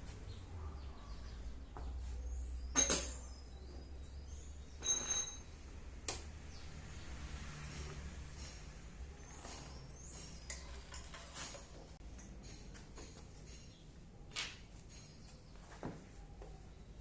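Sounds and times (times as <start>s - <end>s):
metal parts clinking and scraping: 9.2s - 12.7s.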